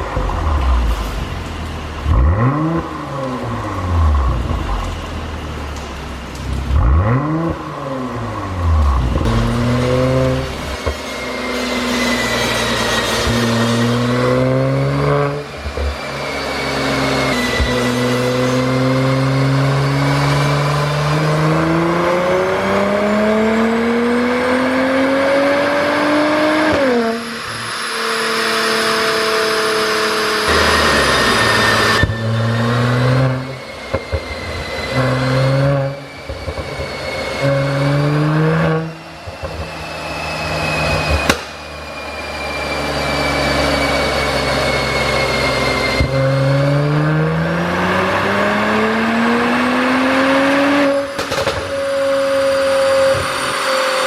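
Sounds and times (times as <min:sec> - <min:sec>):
exhaust popping: 0:00.0 - 0:11.6, 0:30.4 - 0:41.8
car engine revving: 0:00.0 - 0:54.0.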